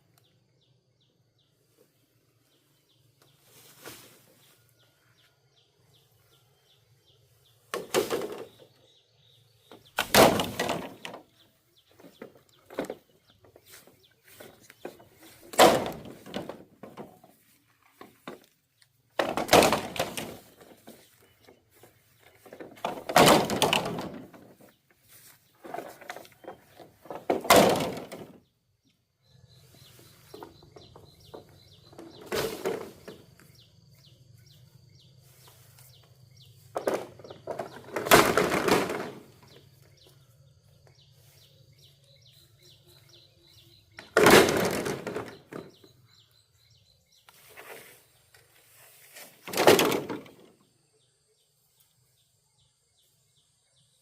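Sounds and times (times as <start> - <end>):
birds chirping: 0.0 - 54.0
bamboo being struck and broken: 9.9 - 11.2, 14.4 - 17.1, 19.2 - 21.0, 22.6 - 24.5, 25.6 - 28.4, 36.7 - 39.5, 44.0 - 45.6.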